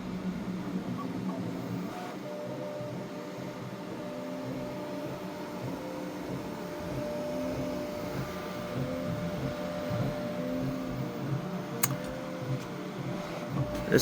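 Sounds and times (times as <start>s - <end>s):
steady fan hum: 2.6s - 14.0s.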